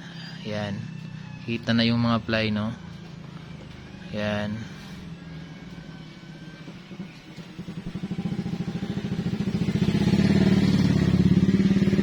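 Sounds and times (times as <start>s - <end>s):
motorcycle engine running: 0.8s - 12.0s.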